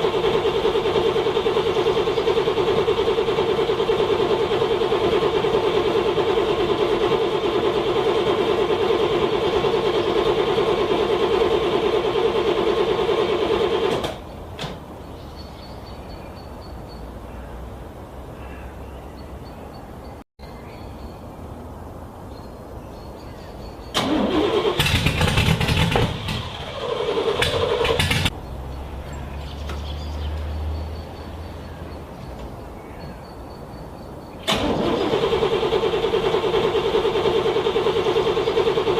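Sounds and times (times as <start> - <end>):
car starter cranking engine: 0.0 - 14.3, 23.9 - 28.3, 34.4 - 38.9.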